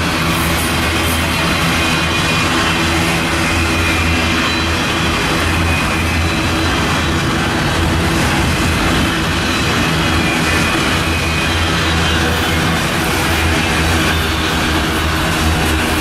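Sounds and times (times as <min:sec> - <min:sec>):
freight train rumbling by: 0:00.0 - 0:16.0.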